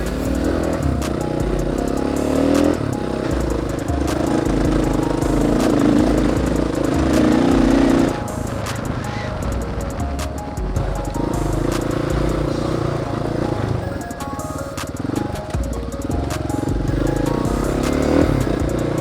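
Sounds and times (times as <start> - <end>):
dirt bike engine revving: 0.0 - 9.8, 11.1 - 14.0, 16.2 - 19.0
rattles and clicks: 0.0 - 19.0.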